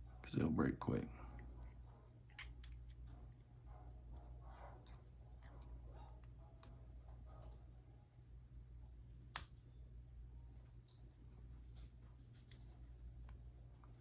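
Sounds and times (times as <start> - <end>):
lock pick clicking in padlock: 2.4 - 3.1.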